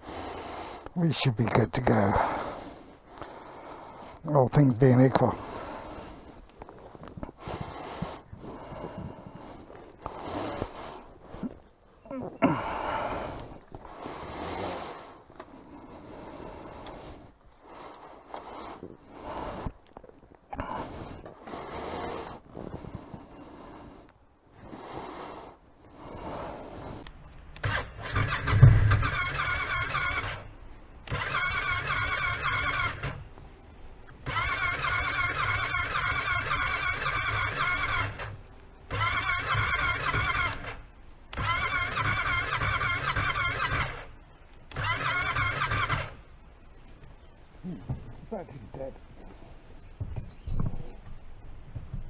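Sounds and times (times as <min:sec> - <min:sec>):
electric starter cranking engine: 0:00.0 - 0:11.6, 0:12.2 - 0:19.7, 0:24.8 - 0:46.4.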